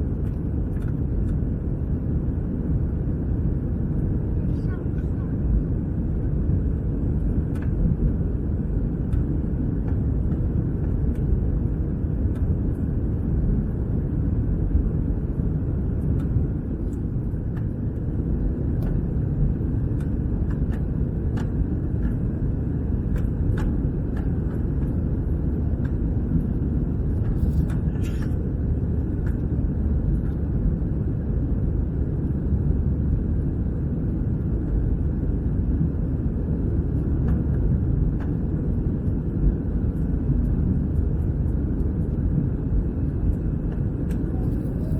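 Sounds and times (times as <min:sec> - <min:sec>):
airliner cabin engine rumble: 0:00.0 - 0:44.9.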